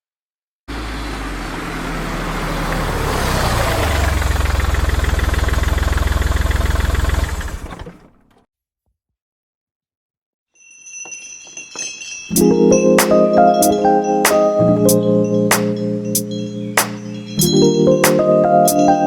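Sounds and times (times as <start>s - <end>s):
engine pulsing rumble: 0.7s - 8.4s.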